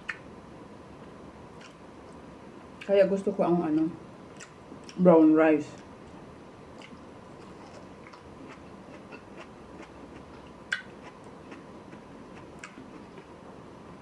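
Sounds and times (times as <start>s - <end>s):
chewing clicks: 6.8s - 13.3s.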